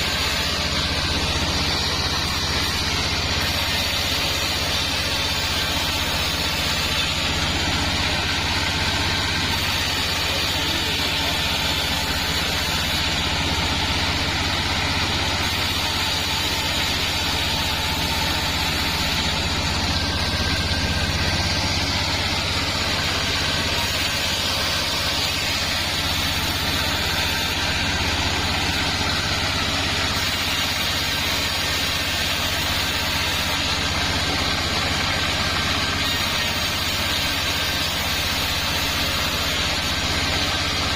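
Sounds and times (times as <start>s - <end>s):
circular sawmill humming and hissing: 0.0s - 40.9s.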